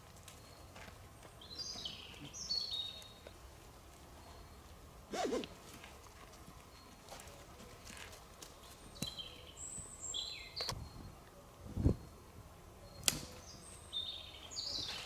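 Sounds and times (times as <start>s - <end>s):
small birds chirping: 0.4s - 3.4s, 8.6s - 11.2s, 12.8s - 15.0s.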